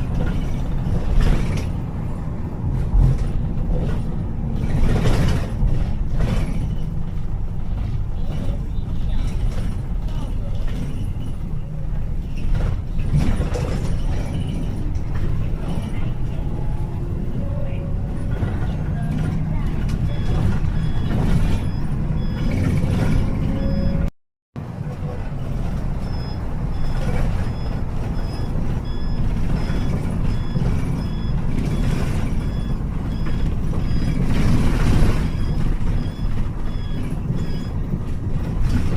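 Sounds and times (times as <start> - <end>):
vehicle rumbling and rattling: 0.0 - 38.9
high electronic beeps: 20.0 - 24.1, 26.0 - 37.8.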